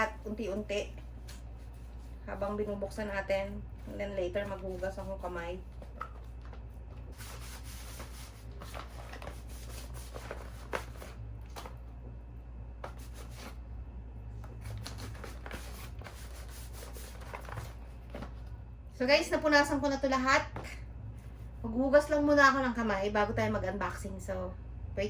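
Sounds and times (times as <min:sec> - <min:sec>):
cloth rubbing packaging: 0:00.0 - 0:11.8, 0:14.5 - 0:18.4.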